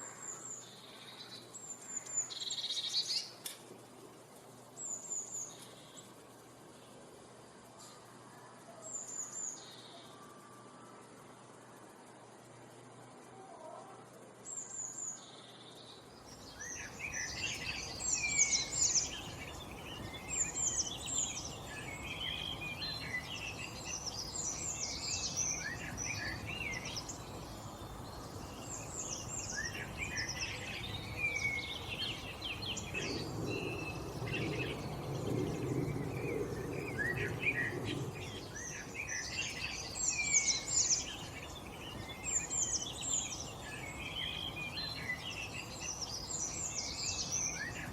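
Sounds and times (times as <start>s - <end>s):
background hiss: 0.0s - 47.9s
birds chirping and singing: 16.2s - 47.9s.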